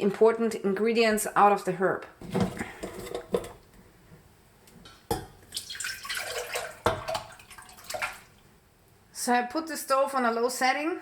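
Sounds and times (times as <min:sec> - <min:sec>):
liquid sloshing and pouring: 0:05.2 - 0:08.5.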